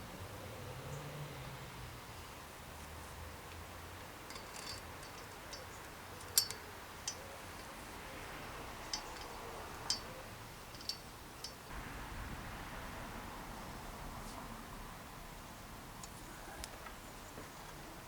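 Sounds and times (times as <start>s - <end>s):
small metal parts clicking: 4.2s - 7.8s, 8.8s - 11.7s.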